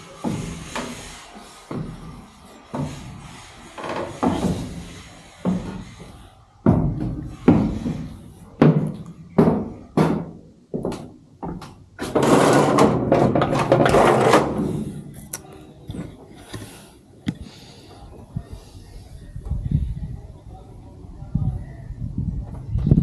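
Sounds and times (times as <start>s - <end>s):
heavy knocks and thumps: 1.7s - 3.2s, 3.9s - 15.0s.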